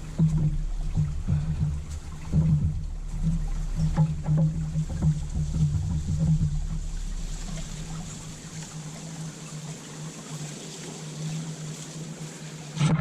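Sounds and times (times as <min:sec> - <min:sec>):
low rumble: 0:00.0 - 0:09.6
honeybees buzzing: 0:00.0 - 0:12.9.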